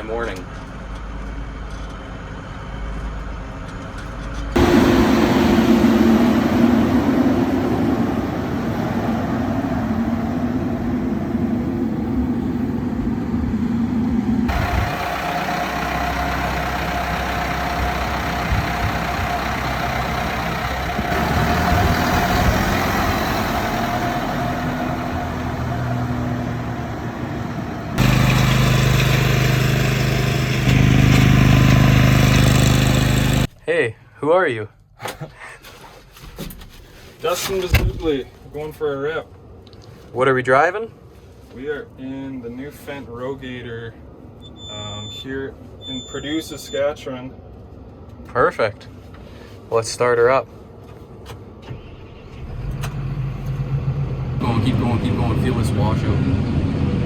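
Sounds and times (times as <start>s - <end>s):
tractor engine running: 4.6s - 33.5s, 52.3s - 57.0s.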